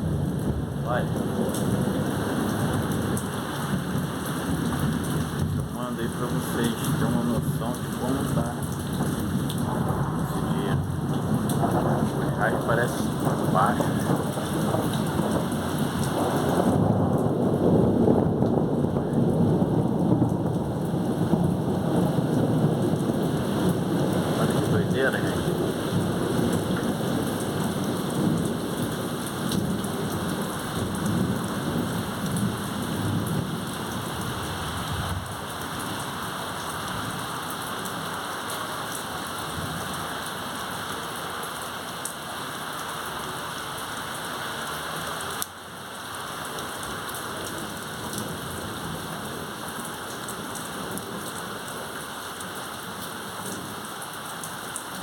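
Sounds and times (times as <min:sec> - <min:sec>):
thunder rolling: 0:00.0 - 0:36.0
heavy rain pouring: 0:00.0 - 0:55.0.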